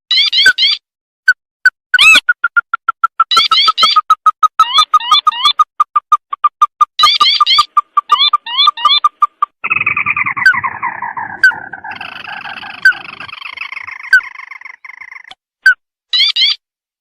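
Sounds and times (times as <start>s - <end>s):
bird call trill: 7.0s - 15.3s.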